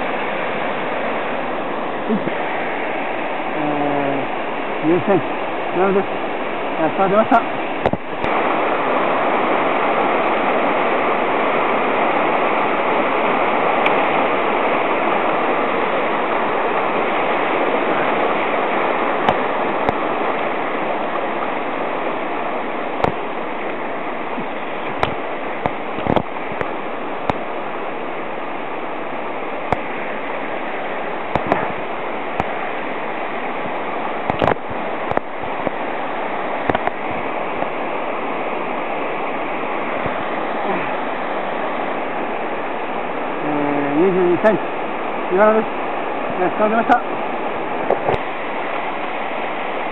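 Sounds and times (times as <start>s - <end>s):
mountain stream rushing: 0.0s - 49.9s
sharp clicks and knocks: 31.4s - 31.7s.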